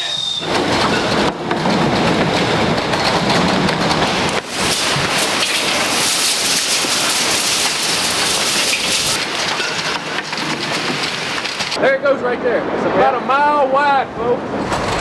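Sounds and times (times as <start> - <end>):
heavy rain pouring: 0.4 - 11.8.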